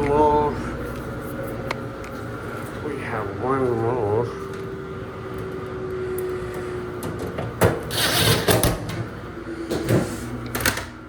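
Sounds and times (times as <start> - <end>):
scraping and rubbing of panels: 7.6 - 9.0.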